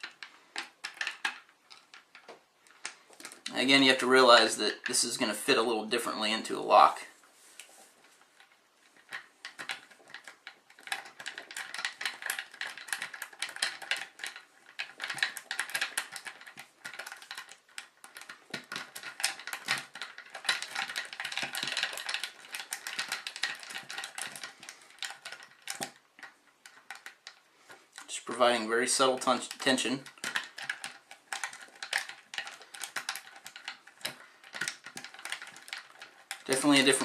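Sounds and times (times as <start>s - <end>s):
lock pick clicking and scraping: 8.4s - 28.1s, 29.3s - 37.0s.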